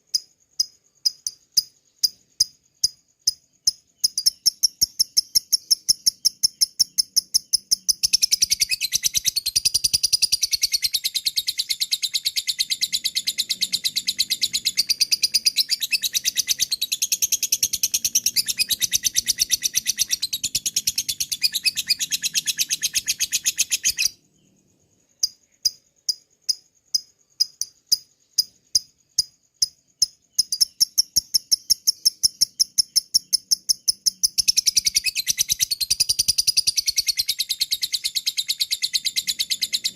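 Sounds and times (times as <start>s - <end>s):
lovebird chattering: 3.6s - 24.2s.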